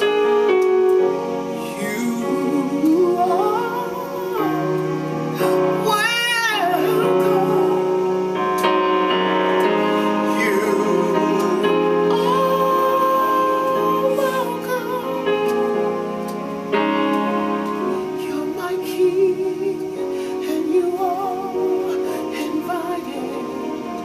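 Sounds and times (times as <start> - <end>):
held keyboard chords: 0.0 - 24.0
woman singing gospel: 1.6 - 8.3, 10.0 - 15.8, 17.8 - 24.0.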